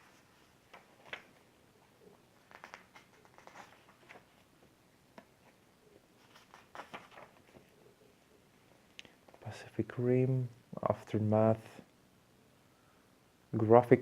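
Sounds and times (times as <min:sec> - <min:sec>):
paper pages rustling: 0:00.0 - 0:05.6, 0:06.2 - 0:07.8.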